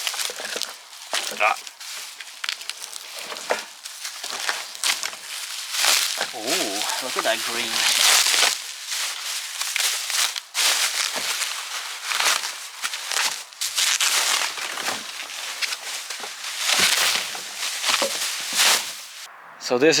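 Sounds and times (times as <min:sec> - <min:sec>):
plastic wrap crinkling: 0:00.0 - 0:19.3.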